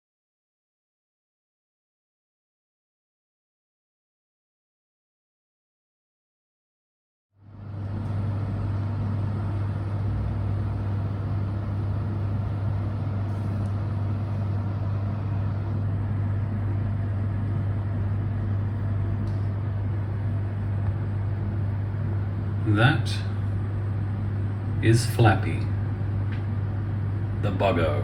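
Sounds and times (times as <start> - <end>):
low machine hum: 7.4 - 28.0.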